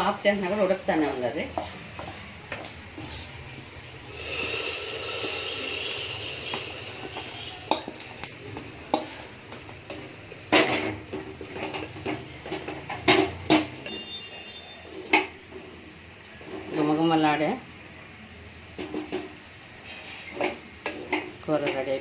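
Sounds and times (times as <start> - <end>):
hot oil sizzling: 0.0 - 13.9
metal spoon clinking on pots: 0.5 - 22.0.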